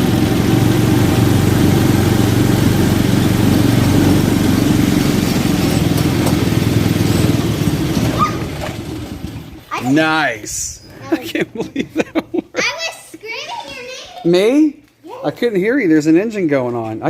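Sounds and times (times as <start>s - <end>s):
four-wheeler engine running: 0.0s - 10.7s.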